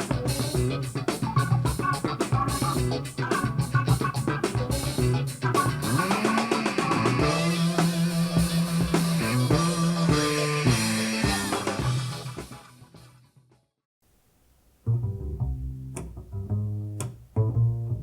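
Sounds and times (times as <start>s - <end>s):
electric guitar: 0.0s - 13.0s
bass guitar: 0.0s - 13.2s, 14.8s - 18.0s
drum kit: 0.0s - 13.2s
funk music: 0.0s - 13.3s, 14.8s - 18.0s.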